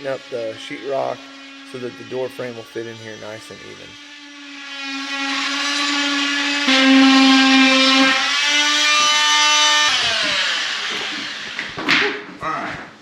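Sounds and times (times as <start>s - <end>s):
rotary tool spinning down: 0.0s - 11.8s
rotary tool whining: 0.0s - 11.8s.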